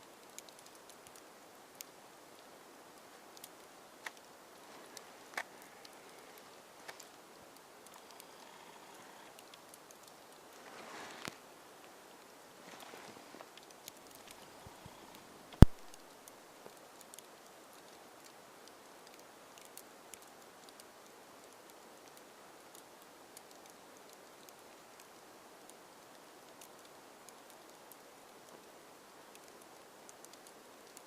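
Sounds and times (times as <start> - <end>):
light ticks and rustling: 0.0 - 31.0
soft steady hiss: 0.0 - 31.0
sharp click: 15.6 - 16.0.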